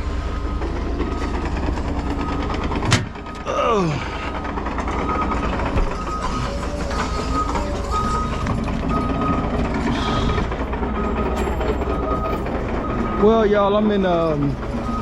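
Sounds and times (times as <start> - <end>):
diesel engine rumbling: 0.0 - 15.0
backup alarm beeping: 2.0 - 2.8, 4.4 - 9.5, 11.0 - 13.6.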